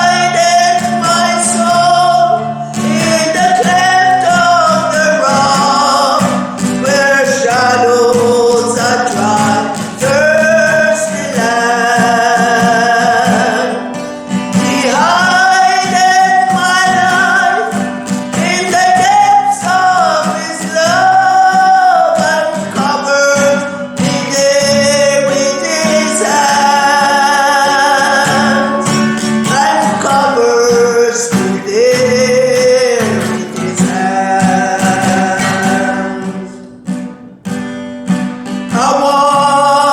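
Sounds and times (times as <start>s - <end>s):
person singing with vibrato: 0.0s - 37.4s, 38.1s - 39.9s
guitar: 0.0s - 39.9s.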